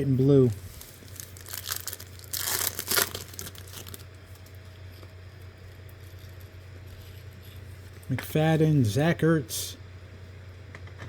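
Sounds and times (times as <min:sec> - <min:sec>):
low steady hum: 0:00.0 - 0:11.0
foil wrapper crinkling and tearing: 0:00.4 - 0:04.6.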